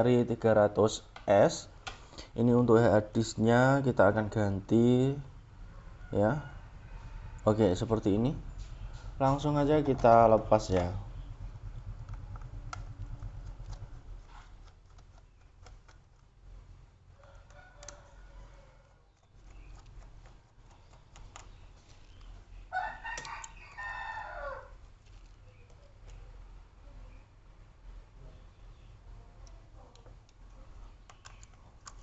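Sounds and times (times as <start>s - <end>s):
rooster crowing: 5.6s - 7.9s, 17.1s - 19.1s, 22.7s - 24.8s.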